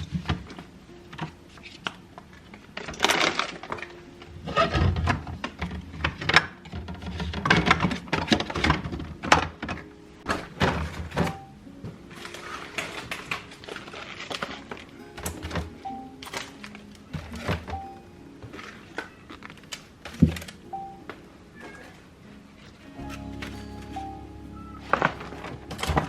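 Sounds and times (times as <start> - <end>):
packaging knocks and rustles: 4.6 - 17.9, 18.5 - 21.2.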